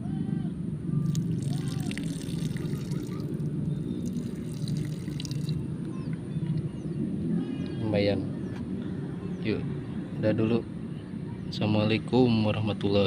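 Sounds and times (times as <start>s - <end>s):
small splashes: 1.0s - 5.6s
water sloshing and dripping: 1.0s - 5.6s.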